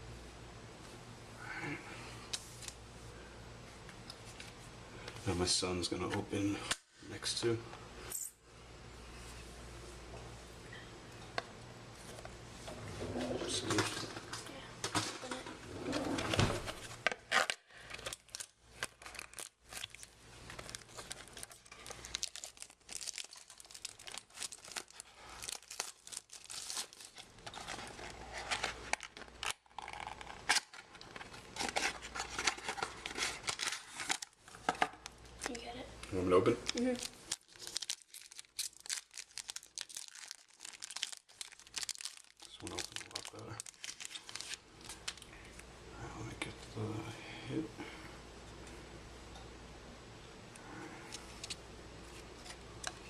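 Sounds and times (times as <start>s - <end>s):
plastic wrapper crinkling and tearing: 16.9s - 45.6s.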